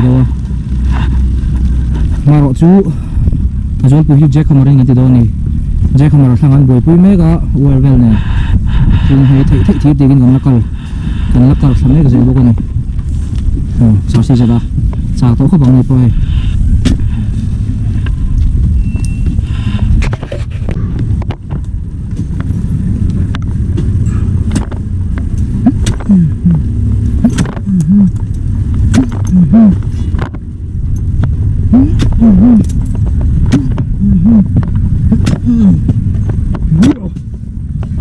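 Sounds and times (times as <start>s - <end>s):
heavy diesel machinery running: 0.0s - 38.0s
sharp metallic knocks: 23.7s - 26.1s.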